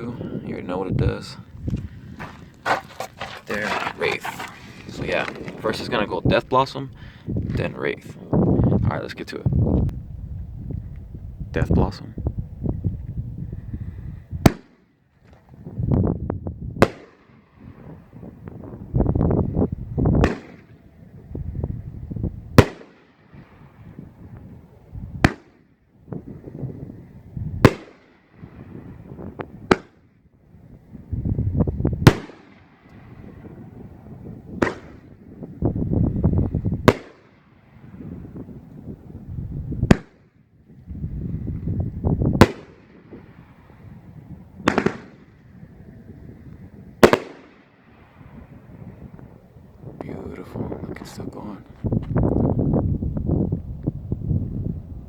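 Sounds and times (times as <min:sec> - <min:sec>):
firework booms: 0:14.4 - 0:14.8, 0:16.7 - 0:25.6, 0:26.2 - 0:30.0, 0:31.0 - 0:40.3, 0:41.0 - 0:51.3.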